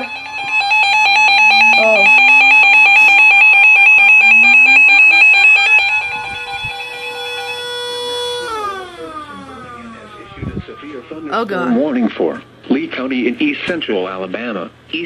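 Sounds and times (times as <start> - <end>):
siren winding up: 0.0 - 11.2
warbling electronic alarm: 0.0 - 12.0.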